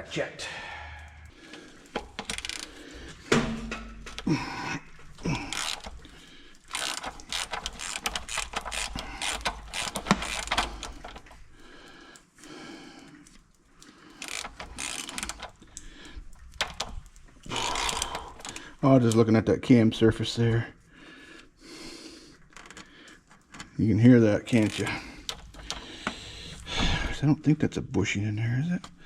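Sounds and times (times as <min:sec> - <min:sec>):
hand ratchet clicking: 0:01.8 - 0:04.4, 0:05.2 - 0:11.4, 0:14.1 - 0:15.9, 0:16.5 - 0:19.2, 0:24.5 - 0:26.7.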